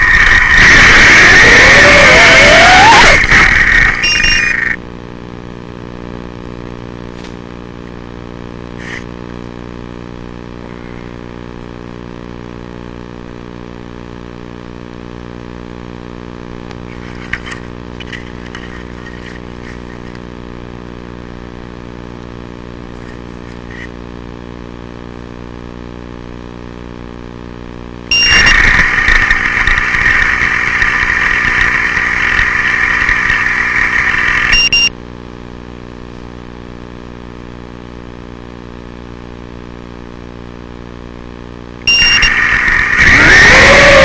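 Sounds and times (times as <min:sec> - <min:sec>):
quadcopter motors whining: 0:00.0 - 0:04.8, 0:28.1 - 0:34.9, 0:41.9 - 0:44.0
motors humming at low throttle: 0:00.0 - 0:44.0.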